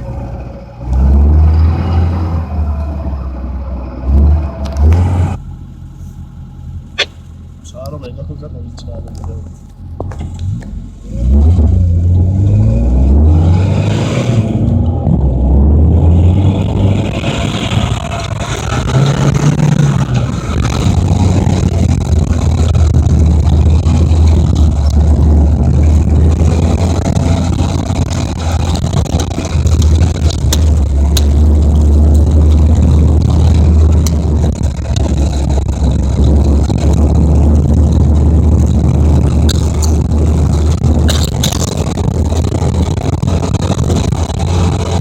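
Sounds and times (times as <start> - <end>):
vehicle engine running at low revs: 0.0 - 45.0
sharp knocks: 7.0 - 7.2.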